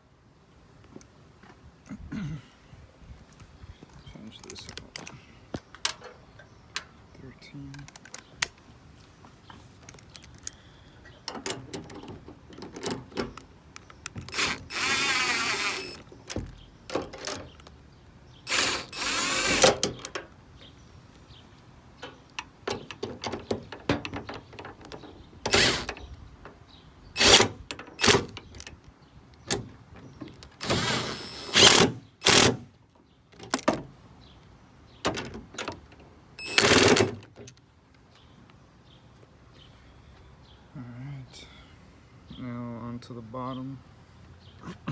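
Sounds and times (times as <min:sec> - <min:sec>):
clicks and metal knocks: 0:04.4 - 0:07.0, 0:09.8 - 0:14.6, 0:15.8 - 0:17.8, 0:19.5 - 0:20.4, 0:22.0 - 0:26.6, 0:35.0 - 0:37.6
power tool tightening bolts: 0:11.3 - 0:17.6, 0:18.5 - 0:20.2, 0:22.0 - 0:26.1, 0:27.2 - 0:28.8, 0:30.5 - 0:32.7, 0:35.1 - 0:37.4.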